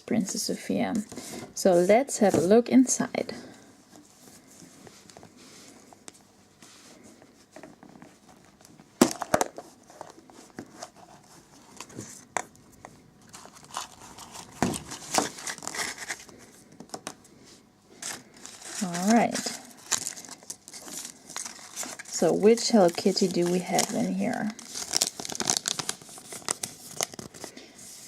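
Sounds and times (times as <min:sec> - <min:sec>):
plastic wrapping crinkling: 0:13.2 - 0:17.2, 0:18.0 - 0:28.0.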